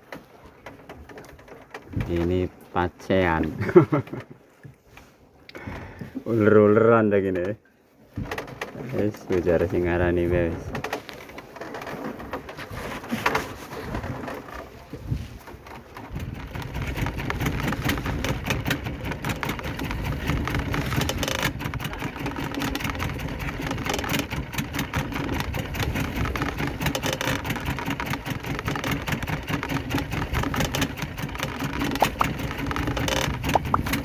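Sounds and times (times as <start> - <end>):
boat engine running: 8.1 - 34.0.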